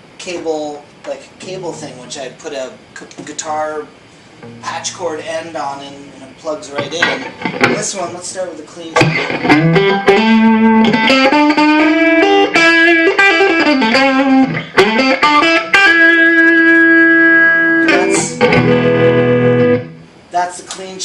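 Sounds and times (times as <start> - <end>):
clean electric guitar: 4.4 - 5.6, 6.7 - 8.2, 8.9 - 20.2.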